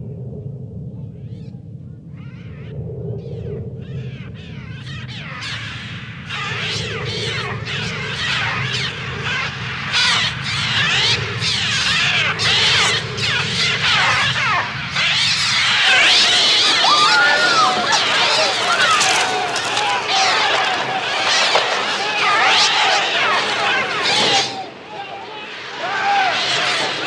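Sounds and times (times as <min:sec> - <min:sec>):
steady low rumble: 0:00.0 - 0:21.9
seagulls screeching: 0:04.5 - 0:24.7.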